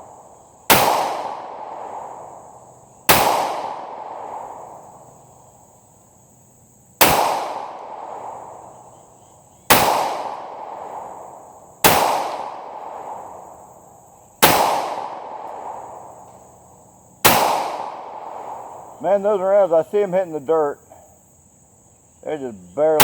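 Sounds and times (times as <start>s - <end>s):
pistol shots echoing: 0.0s - 2.5s, 3.1s - 4.9s, 7.0s - 8.8s, 9.7s - 13.5s, 14.4s - 16.4s, 17.2s - 19.4s.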